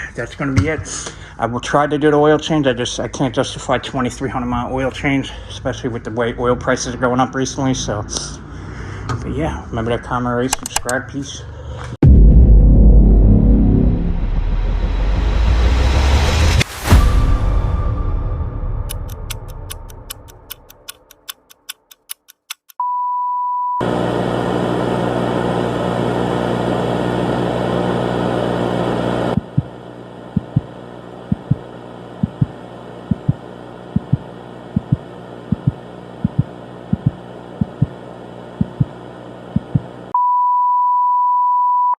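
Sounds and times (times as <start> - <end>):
sharp clicks: 10.5 - 11.0, 18.8 - 22.8
ticking: 18.9 - 22.8.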